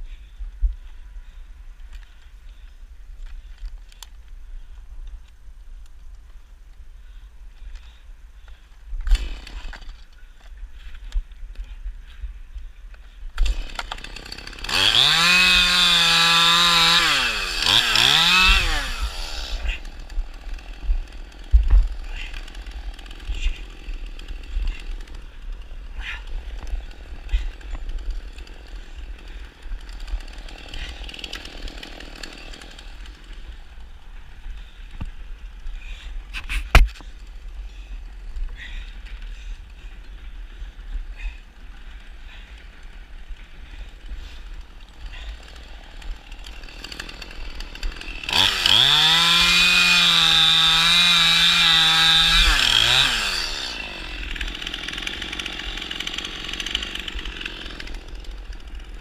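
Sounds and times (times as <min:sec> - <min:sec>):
chainsaw engine revving: 0:09.1 - 0:10.0, 0:13.4 - 0:37.0, 0:41.2 - 0:59.0.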